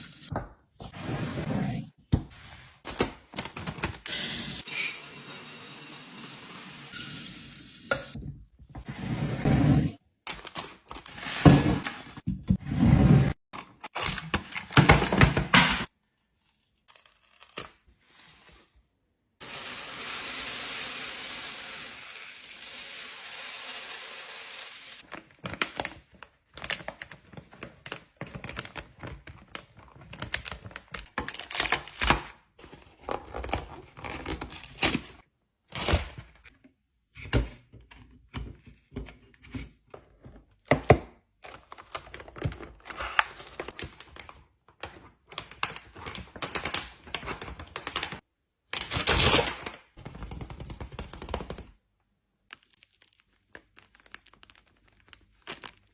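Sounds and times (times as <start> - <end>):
plastic packaging crinkling: 52.5 - 55.9.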